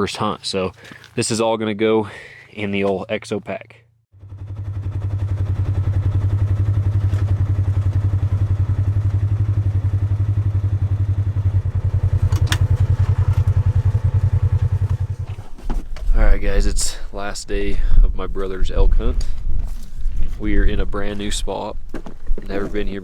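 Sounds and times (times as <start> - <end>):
vehicle engine throbbing: 4.2 - 15.6.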